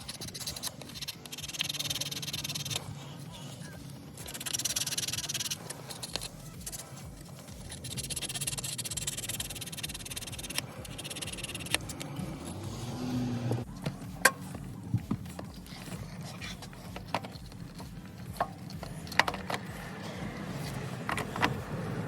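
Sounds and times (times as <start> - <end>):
ratchet wrench clicking: 0.0 - 2.9, 4.2 - 12.8, 16.5 - 21.6.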